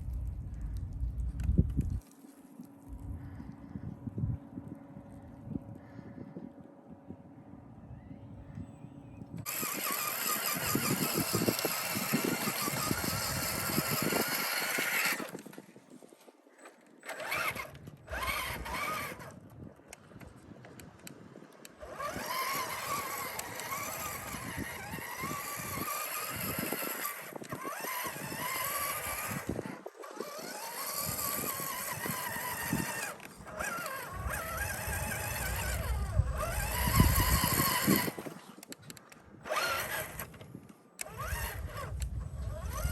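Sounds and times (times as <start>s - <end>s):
toy truck electric motor whining: 9.4s - 15.6s, 16.6s - 19.4s, 21.7s - 42.9s.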